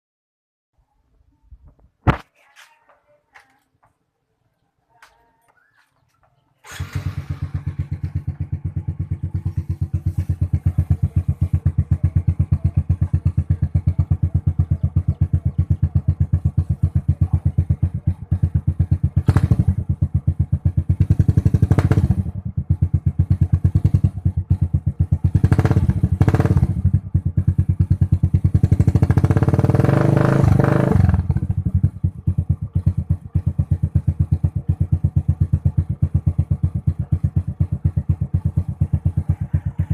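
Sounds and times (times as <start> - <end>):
motorcycle engine idling and revving: 6.0 - 39.9.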